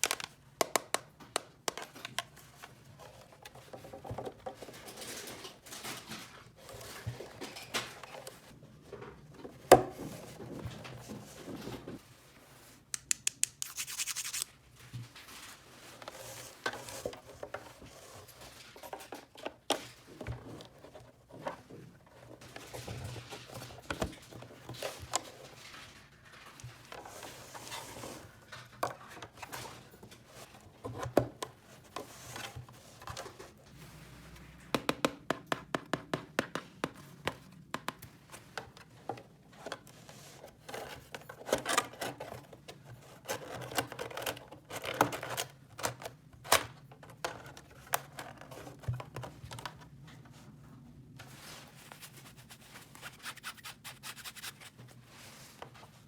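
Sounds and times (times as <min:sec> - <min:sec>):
scratching and rubbing: 0:13.5 - 0:14.5, 0:51.3 - 0:55.4.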